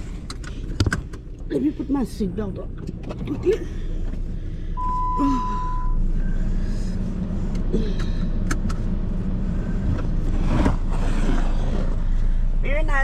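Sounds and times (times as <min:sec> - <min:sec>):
engine and road rumble: 0:00.0 - 0:13.0
electronic warning beep: 0:04.8 - 0:06.0.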